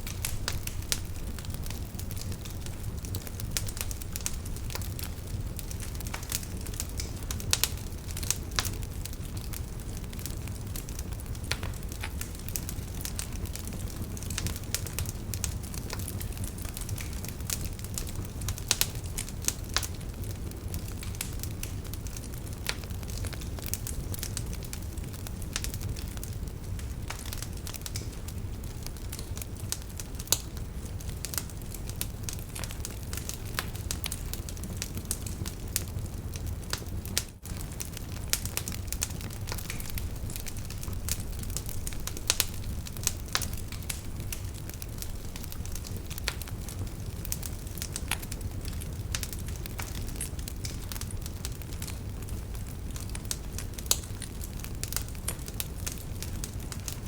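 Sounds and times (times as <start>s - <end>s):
fire crackling and popping: 0.0s - 57.0s
flames rumbling: 0.0s - 57.0s.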